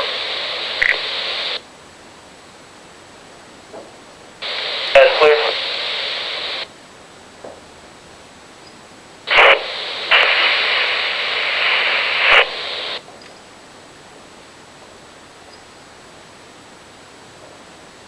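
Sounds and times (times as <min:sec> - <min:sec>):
scanner static burst: 0:00.0 - 0:01.6, 0:04.4 - 0:06.7, 0:09.2 - 0:13.0
faint low hiss: 0:00.0 - 0:18.0
steady radio hiss: 0:00.0 - 0:18.0.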